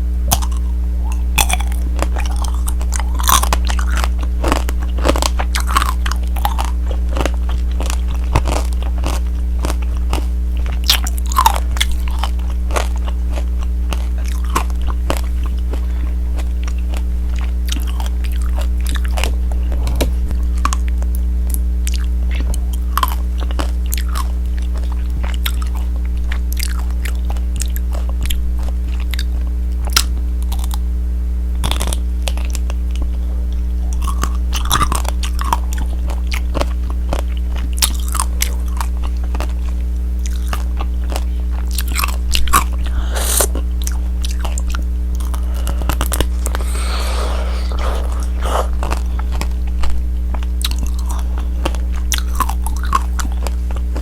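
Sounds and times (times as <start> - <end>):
steady low hum: 0.0 - 54.0
candy shell crunching: 0.3 - 20.9, 33.9 - 54.0.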